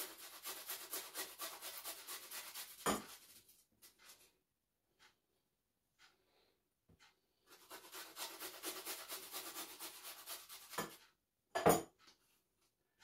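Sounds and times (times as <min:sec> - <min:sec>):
garlic rasping on grater: 0:00.0 - 0:04.0, 0:07.5 - 0:11.1.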